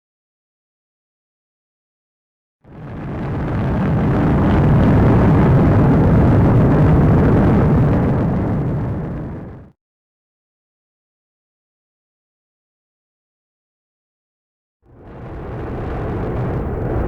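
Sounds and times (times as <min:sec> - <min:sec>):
volcano deep rumble: 0:02.7 - 0:09.8, 0:14.9 - 0:17.0.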